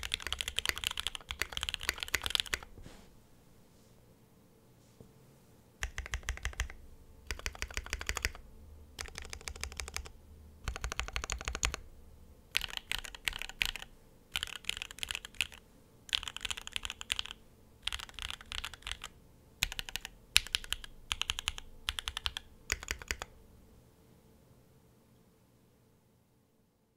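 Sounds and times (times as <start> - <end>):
keyboard typing: 0.0 - 2.7, 5.8 - 8.4, 9.0 - 11.9, 12.5 - 23.3.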